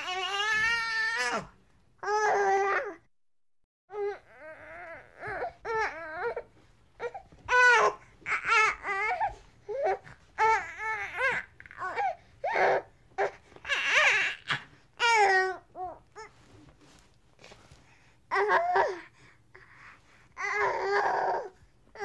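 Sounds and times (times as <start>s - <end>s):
baby crying: 0.0s - 3.0s, 20.4s - 22.0s.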